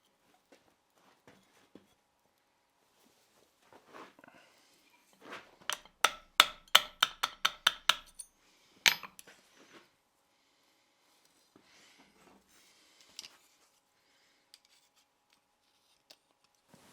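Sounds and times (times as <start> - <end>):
hammer striking steel: 5.7 - 8.3, 8.9 - 9.1
soft metal clinks of handling: 8.9 - 9.4.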